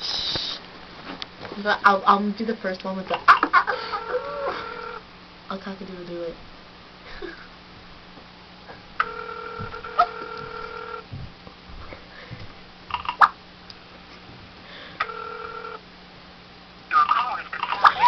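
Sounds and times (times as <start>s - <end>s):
telephone ringback tone: 3.7s - 5.0s, 9.0s - 11.1s, 15.0s - 15.8s.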